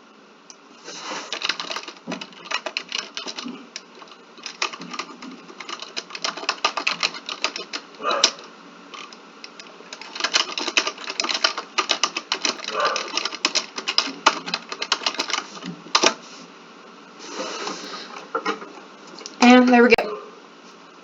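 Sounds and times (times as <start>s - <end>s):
keyboard typing: 1.3s - 16.2s.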